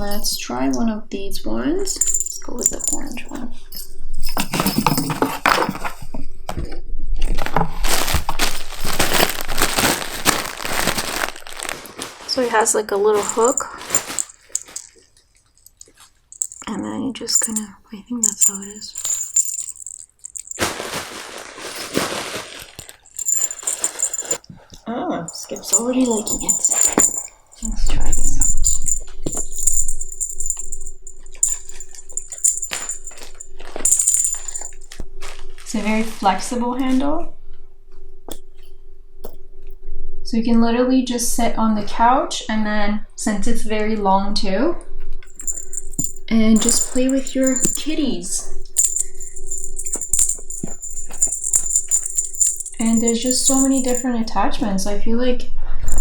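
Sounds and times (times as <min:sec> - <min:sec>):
metallic jingling: 0:00.0 - 0:00.8, 0:01.8 - 0:06.0, 0:07.9 - 0:15.0, 0:16.4 - 0:20.9, 0:21.6 - 0:22.2, 0:23.1 - 0:24.4, 0:25.3 - 0:35.0, 0:45.2 - 0:54.7
light clicks and rattles: 0:01.8 - 0:06.0, 0:07.9 - 0:14.9, 0:15.6 - 0:20.6, 0:23.1 - 0:24.4, 0:25.3 - 0:35.0, 0:45.3 - 0:54.4
plastic packaging crinkling: 0:07.3 - 0:14.9, 0:18.2 - 0:24.4.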